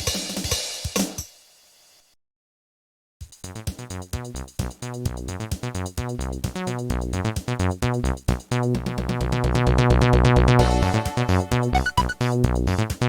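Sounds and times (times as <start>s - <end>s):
electronic ringtone tune: 11.7s - 12.3s.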